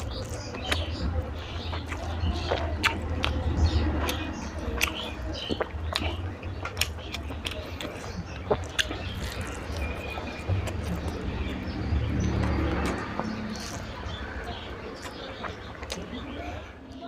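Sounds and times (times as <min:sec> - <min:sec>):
person chewing and lip smacking: 0:00.0 - 0:17.0
low rumble: 0:09.0 - 0:15.1.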